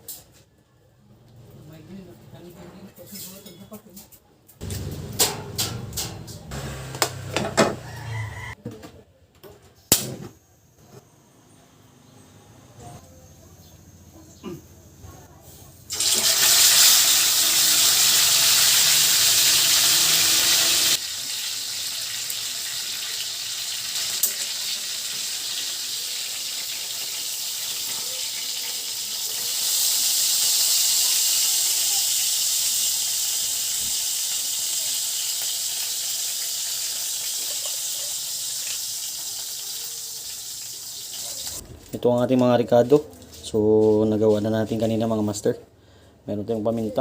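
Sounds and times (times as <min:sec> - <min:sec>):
tap water running: 0:15.9 - 0:41.6.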